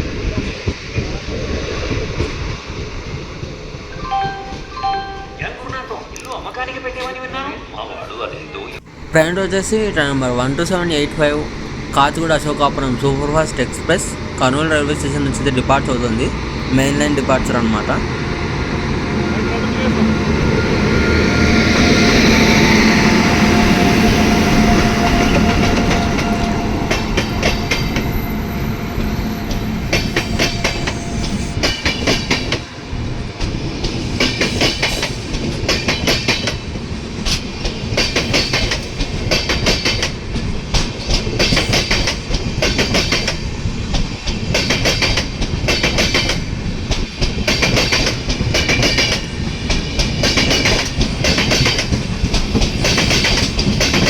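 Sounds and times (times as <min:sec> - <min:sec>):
train passing hum: 0:00.0 - 0:54.0
train wheels clicking over rail joints: 0:28.8 - 0:54.0.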